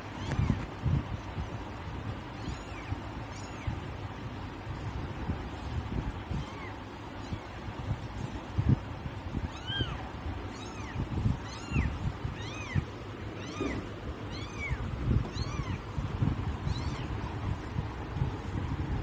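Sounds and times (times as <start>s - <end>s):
kitten mewing: 9.4s - 17.7s.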